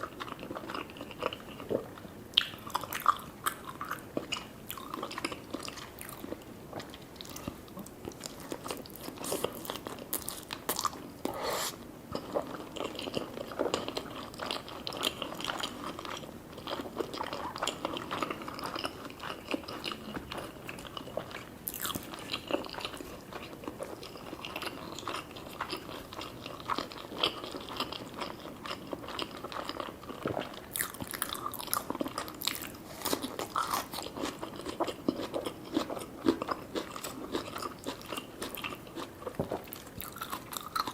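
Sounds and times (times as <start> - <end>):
biting and chewing food: 12.2 - 40.9.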